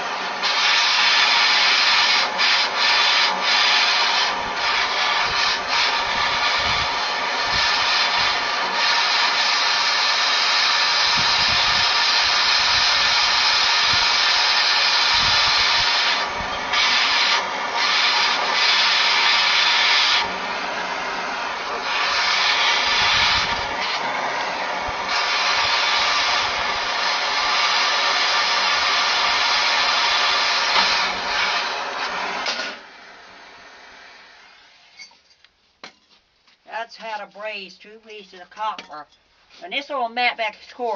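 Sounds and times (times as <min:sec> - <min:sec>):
gas torch flame hissing: 0:00.0 - 0:35.1.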